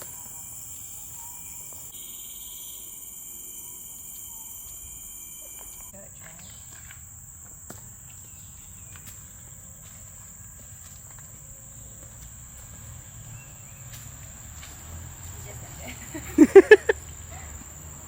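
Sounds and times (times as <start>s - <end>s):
high-pitched insect drone: 0.0s - 6.0s.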